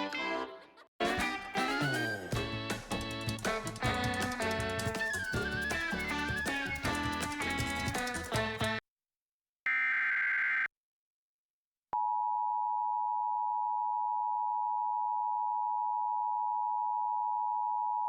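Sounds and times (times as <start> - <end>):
music: 0.0 - 8.8.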